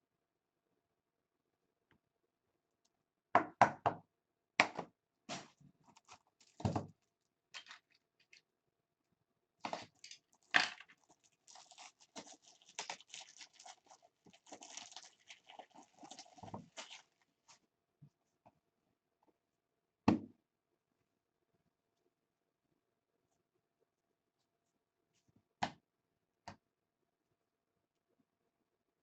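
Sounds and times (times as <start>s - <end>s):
foil wrappers crinkling: 5.9s - 8.4s, 9.7s - 17.3s.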